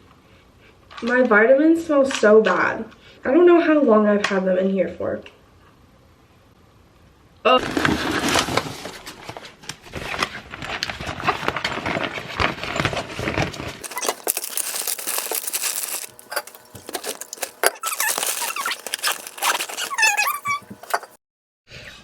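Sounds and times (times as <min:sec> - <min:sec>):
belongings rustling and clicking: 0:13.8 - 0:21.2.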